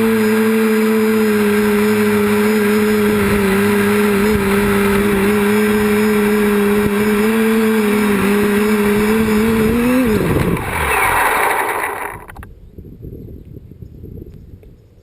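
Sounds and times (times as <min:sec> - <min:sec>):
drone motors humming: 0:00.0 - 0:12.5
rushing noise: 0:07.8 - 0:12.4.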